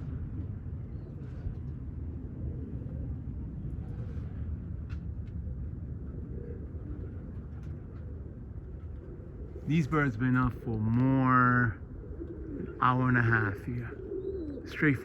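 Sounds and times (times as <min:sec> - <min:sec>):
low outdoor rumble: 0:00.0 - 0:15.0.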